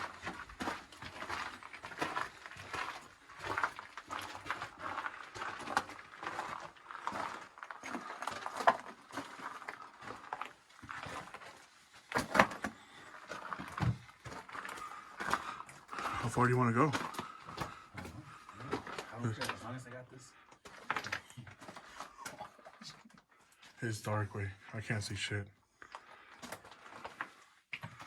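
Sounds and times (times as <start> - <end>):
footsteps on rocky floor: 0.0 - 19.8, 25.8 - 28.0.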